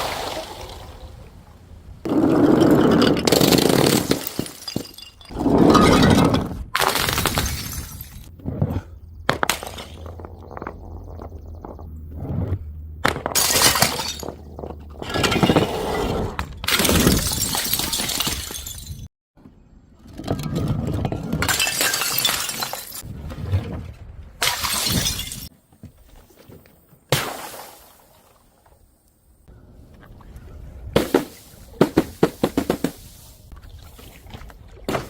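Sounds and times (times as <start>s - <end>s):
glass bottles shattering: 2.5s - 8.3s, 13.3s - 15.7s, 16.6s - 19.1s, 21.4s - 23.0s, 24.4s - 25.5s
crunch of glass: 2.6s - 6.1s, 13.1s - 15.7s, 21.4s - 23.0s.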